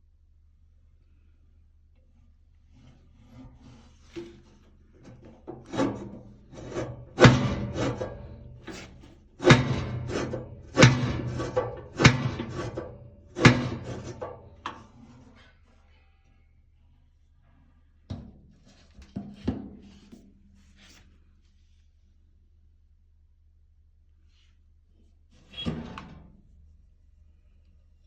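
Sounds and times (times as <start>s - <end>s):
scraping and rubbing: 2.6s - 15.7s
wood and metal knocking: 5.6s - 14.6s.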